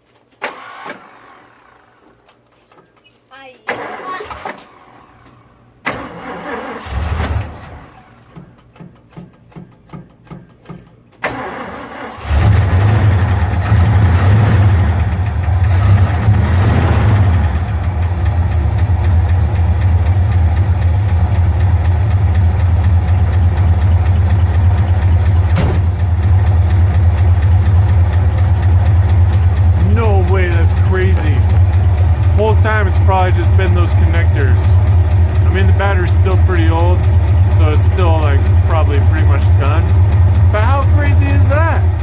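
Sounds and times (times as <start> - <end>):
engine cranking on starter: 0.4 - 2.2, 3.7 - 5.2, 5.8 - 9.8, 11.2 - 42.0
engine running steadily: 11.4 - 42.0.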